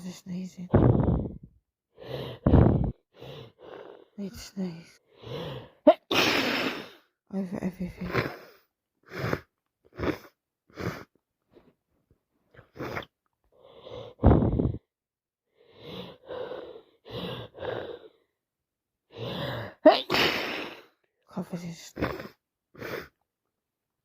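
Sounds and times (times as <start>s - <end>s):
woman sneezing: 5.9s - 6.9s, 19.8s - 20.9s.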